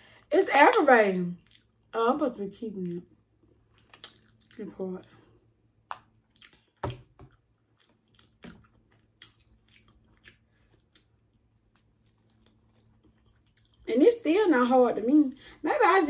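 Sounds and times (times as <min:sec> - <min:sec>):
person chewing and biting: 0:03.6 - 0:04.6, 0:05.9 - 0:13.9
wet mouth clicks and smacks: 0:03.7 - 0:04.6, 0:05.9 - 0:13.9.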